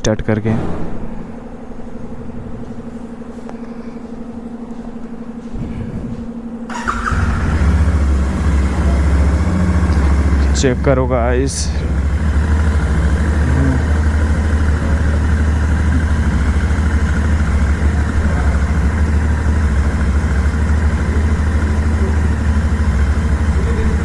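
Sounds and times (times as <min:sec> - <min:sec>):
motorcycle engine idling: 0:06.4 - 0:24.0.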